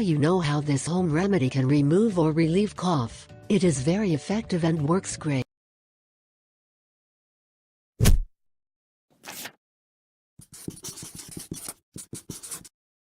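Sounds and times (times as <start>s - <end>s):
sharp thump: 8.0s - 8.3s
short swish: 8.0s - 8.3s.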